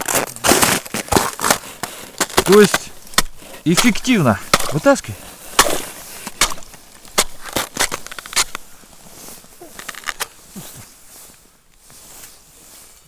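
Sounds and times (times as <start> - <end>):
thin ice cracking: 0.0 - 5.0, 5.6 - 8.6, 9.7 - 10.3.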